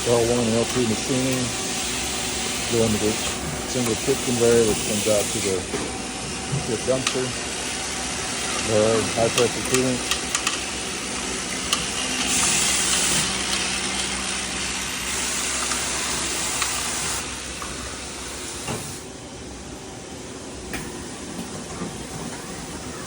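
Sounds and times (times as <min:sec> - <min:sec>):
steady pump hum: 0:00.0 - 0:23.0
high-pressure spray hiss: 0:00.2 - 0:05.6.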